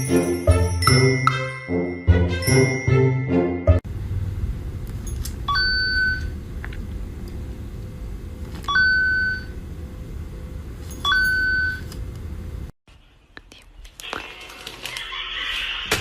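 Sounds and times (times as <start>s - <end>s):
steady low rumble: 3.8s - 8.5s.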